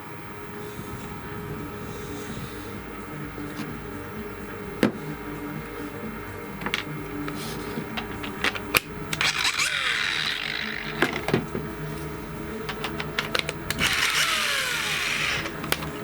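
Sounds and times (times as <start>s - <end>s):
steady low hum: 0.0s - 16.0s
rattling: 6.5s - 16.0s
hard objects clicking and knocking: 7.9s - 11.7s, 12.6s - 16.0s.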